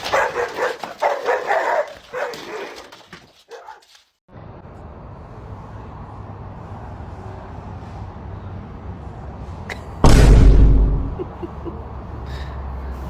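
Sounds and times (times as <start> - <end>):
dog yipping: 0.1 - 2.9.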